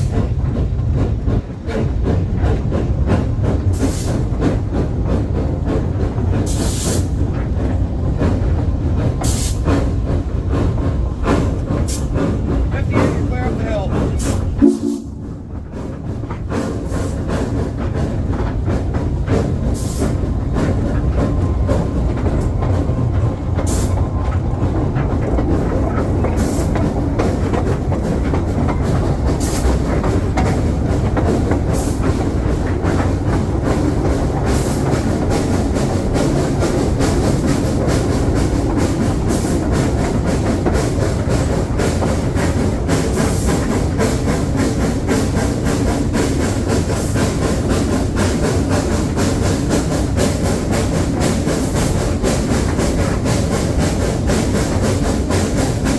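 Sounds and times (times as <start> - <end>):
train rumbling along track: 0.0 - 55.9
wheels clicking over rail joints: 15.2 - 55.9.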